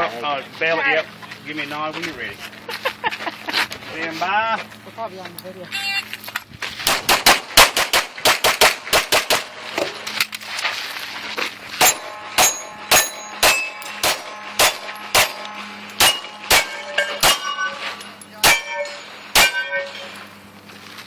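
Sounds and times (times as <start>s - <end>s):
pistol shots: 6.9s - 9.7s, 11.8s - 17.8s, 18.4s - 20.1s
steel targets ringing: 11.8s - 20.3s.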